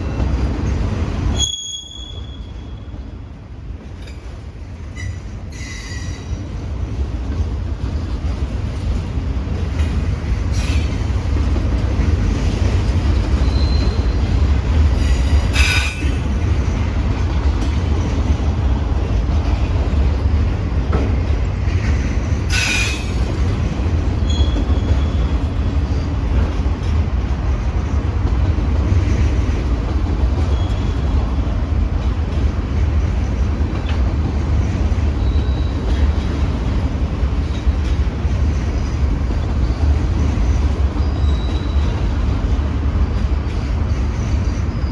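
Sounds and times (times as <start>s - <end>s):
train wheels rumbling on rail: 0.0s - 44.9s
high wheel squeals: 1.3s - 2.8s, 13.4s - 14.3s, 24.2s - 25.5s, 41.0s - 42.0s.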